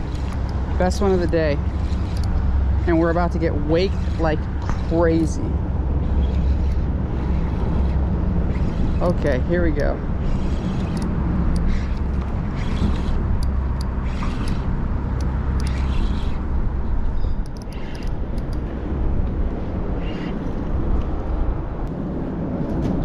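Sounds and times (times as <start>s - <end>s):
boat engine rumble: 0.0s - 23.0s.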